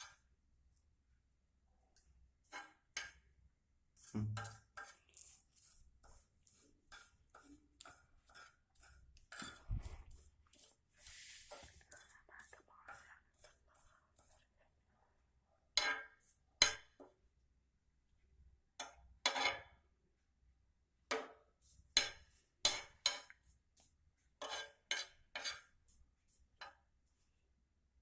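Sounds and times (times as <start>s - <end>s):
metal spoon scraping a pan: 0.0s - 0.3s, 1.9s - 3.3s, 3.9s - 14.5s, 15.7s - 17.0s, 18.8s - 19.8s, 21.6s - 26.9s.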